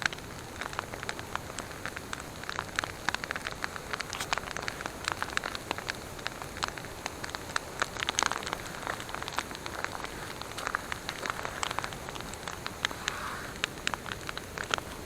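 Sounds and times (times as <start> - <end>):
soft hiss: 0.0 - 15.0
wood campfire crackling: 0.0 - 15.0.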